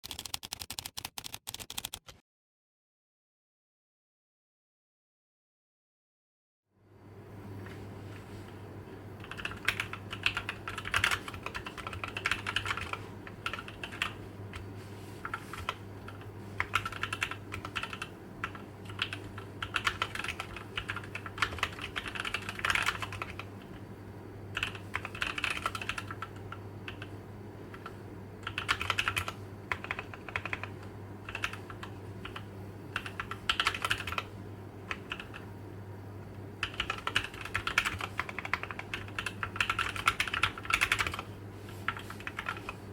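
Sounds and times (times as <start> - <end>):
mechanical keyboard typing: 0.0 - 2.2, 9.2 - 14.6, 15.2 - 23.7, 24.5 - 27.1, 27.7 - 34.3, 34.9 - 35.5, 36.6 - 41.3, 41.9 - 42.8.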